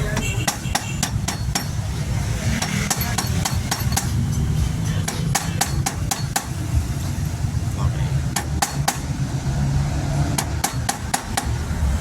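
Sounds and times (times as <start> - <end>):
hammer striking metal: 0.0 - 6.6, 8.3 - 9.2, 10.3 - 11.6.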